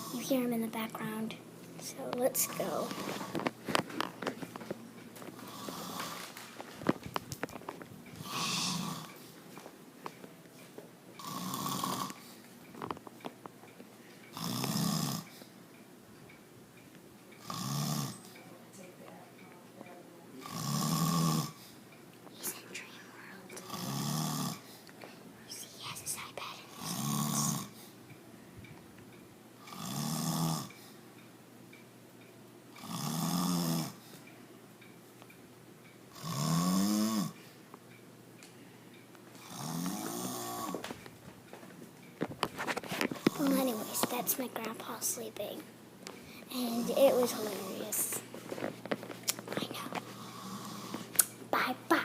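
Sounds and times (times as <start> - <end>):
man snoring: 5.4 - 6.2, 8.2 - 9.2, 11.2 - 12.2, 14.3 - 15.3, 17.4 - 18.2, 20.4 - 21.6, 23.6 - 24.7, 26.7 - 27.8, 29.6 - 30.7, 32.8 - 34.0, 36.1 - 37.4, 39.4 - 40.8, 50.2 - 51.0.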